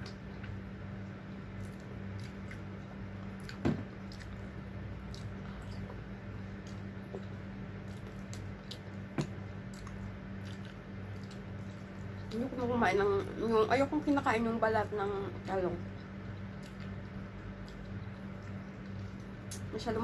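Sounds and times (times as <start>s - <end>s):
steady low hum: 0.0s - 20.0s
person chewing food: 1.4s - 12.4s, 15.9s - 19.6s.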